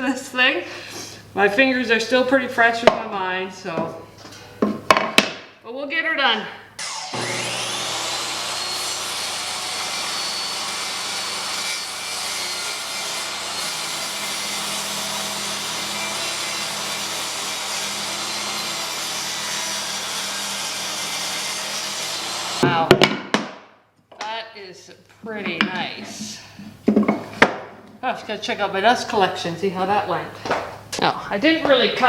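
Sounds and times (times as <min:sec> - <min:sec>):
table saw cutting wood: 0:06.8 - 0:22.6.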